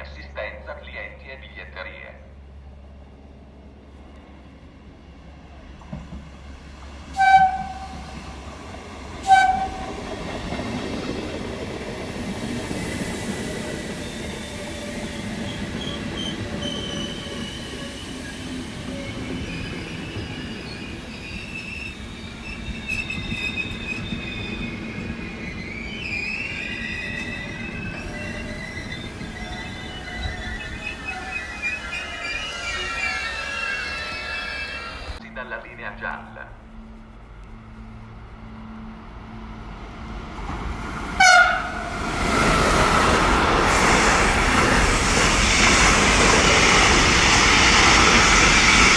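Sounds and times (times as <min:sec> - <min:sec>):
train wheels rumbling on rail: 0:02.4 - 0:48.9
train horn blasts: 0:07.2 - 0:08.2, 0:09.2 - 0:10.0, 0:41.2 - 0:41.9
high wheel squeal: 0:14.0 - 0:35.2.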